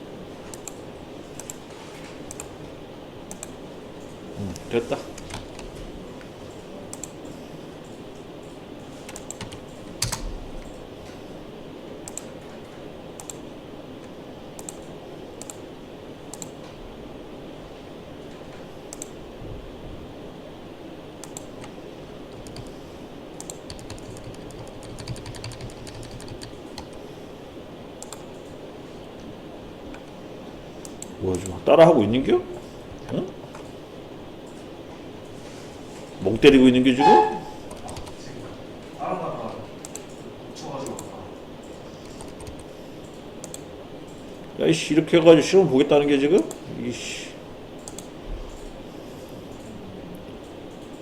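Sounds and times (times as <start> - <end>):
low background hum: 0.0 - 51.0
keyboard and mouse clicks: 0.5 - 0.8, 1.4 - 1.6, 2.2 - 2.5, 3.3 - 3.6, 4.6 - 5.8, 6.9 - 7.2, 9.0 - 10.8, 12.0 - 12.4, 13.2 - 13.4, 14.0 - 15.6, 16.3 - 16.6, 18.9 - 19.2, 21.2 - 22.7, 23.4 - 27.0, 28.0 - 28.6, 30.8 - 31.6, 39.8 - 40.2, 40.8 - 44.2, 47.8 - 48.1.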